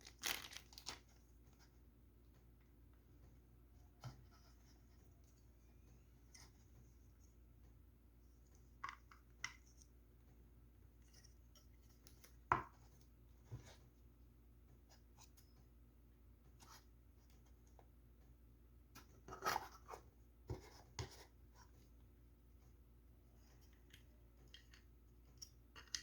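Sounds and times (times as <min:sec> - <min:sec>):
packaging rustling and clicks: 0:00.0 - 0:01.1.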